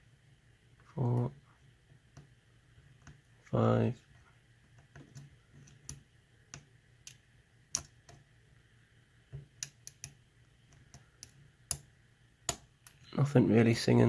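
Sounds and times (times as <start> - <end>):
lock pick clicking on pins: 5.2 - 8.2, 9.6 - 11.9.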